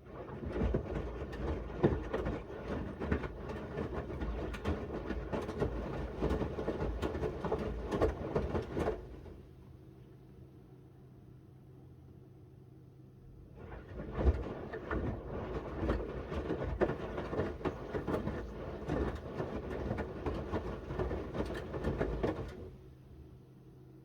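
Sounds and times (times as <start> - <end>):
laundry thudding and clattering: 13.6 - 22.6.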